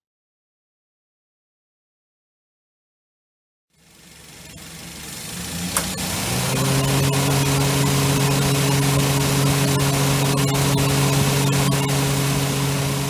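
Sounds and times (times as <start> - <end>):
engine hum: 3.8 - 13.0
click: 5.7 - 6.0.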